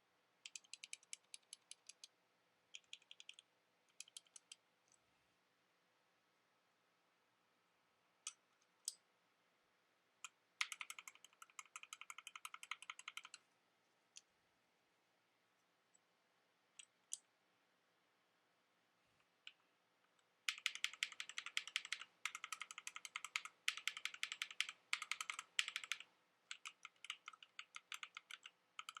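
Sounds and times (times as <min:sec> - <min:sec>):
mechanical keyboard typing: 0:00.4 - 0:02.1, 0:02.8 - 0:04.6, 0:10.2 - 0:13.4, 0:20.5 - 0:29.0.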